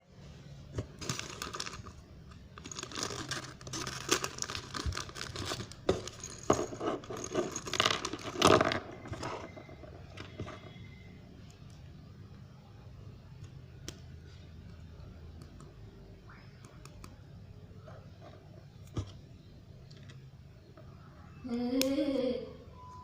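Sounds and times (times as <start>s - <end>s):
plastic wrapping crinkling: 0.8s - 10.7s.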